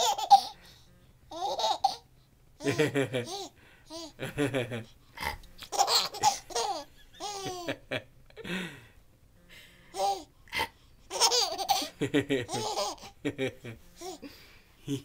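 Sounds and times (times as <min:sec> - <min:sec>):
baby giggling: 0:00.0 - 0:00.6, 0:01.3 - 0:04.2, 0:05.2 - 0:07.8, 0:09.9 - 0:10.3, 0:11.1 - 0:13.2, 0:13.9 - 0:14.3.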